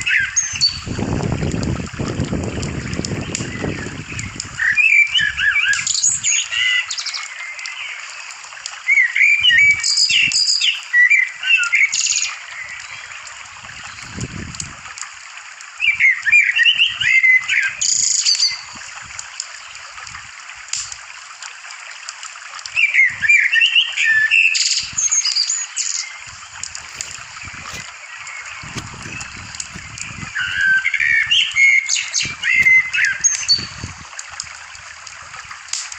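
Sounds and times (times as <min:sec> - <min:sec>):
songbirds chirping: 0:00.0 - 0:20.7, 0:21.7 - 0:35.9.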